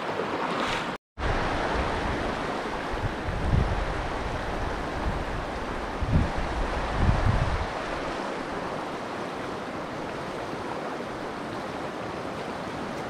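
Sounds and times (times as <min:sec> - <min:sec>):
stream flowing: 0:00.0 - 0:13.0
wind buffeting microphone: 0:01.2 - 0:08.9.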